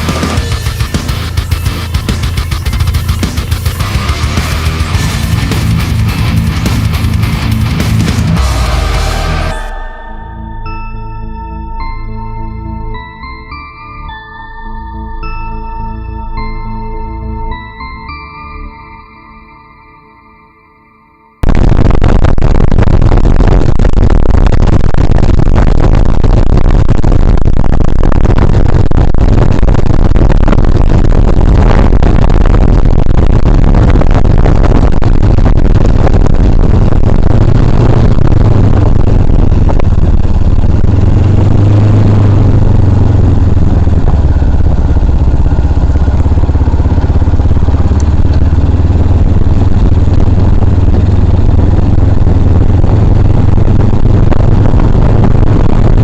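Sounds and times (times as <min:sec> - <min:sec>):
motorcycle engine running: 0:00.0 - 0:09.8, 0:36.0 - 0:56.0
wind noise on microphone: 0:21.4 - 0:56.0.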